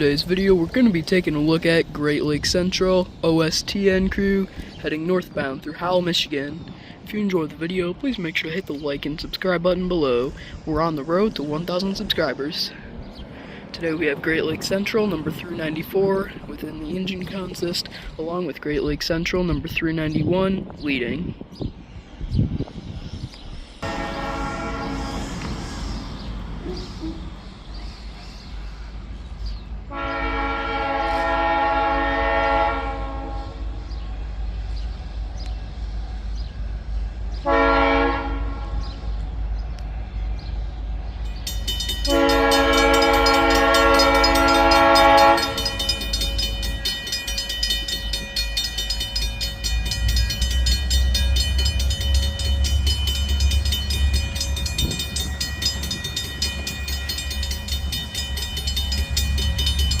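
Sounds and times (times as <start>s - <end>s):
locomotive horn blasts: 23.8s - 25.4s, 29.9s - 33.7s, 37.4s - 38.8s, 42.0s - 46.6s
diesel engine rumble: 38.4s - 60.0s
high-pitched ringing: 41.3s - 60.0s.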